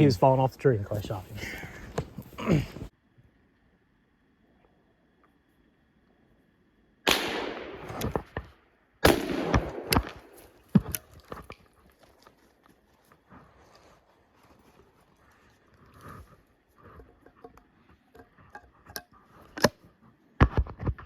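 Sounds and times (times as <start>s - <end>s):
rifle shots with echo: 7.1s - 8.4s, 9.0s - 10.6s.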